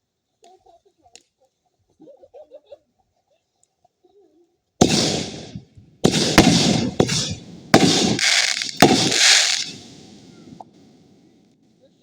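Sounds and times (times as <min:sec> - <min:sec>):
fireworks bangs: 0:04.8 - 0:11.0
fireworks hissing spray: 0:06.3 - 0:10.4.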